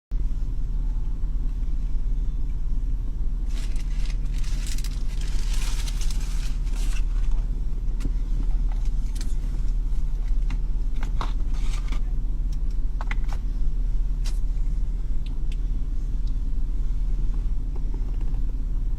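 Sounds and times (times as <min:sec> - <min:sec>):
car engine idling: 0:00.1 - 0:18.9
brief rustling: 0:03.5 - 0:07.4.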